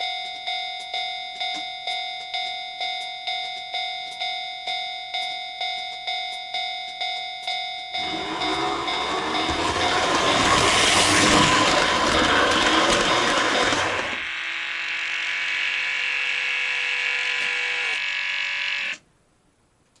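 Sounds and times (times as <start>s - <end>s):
crossing warning bell ringing: 0.0s - 14.3s
model train rumbling rattle: 8.0s - 14.3s.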